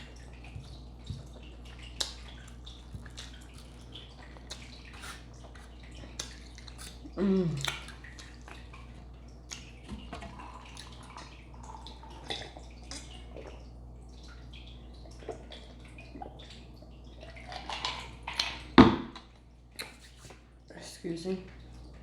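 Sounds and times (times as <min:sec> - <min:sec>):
chewing salad: 0:00.0 - 0:13.6, 0:17.2 - 0:20.4
person burping: 0:07.2 - 0:07.7.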